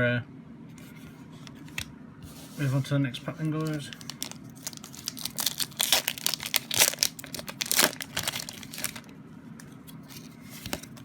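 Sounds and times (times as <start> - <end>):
foil wrapper crinkling and tearing: 3.6 - 9.1.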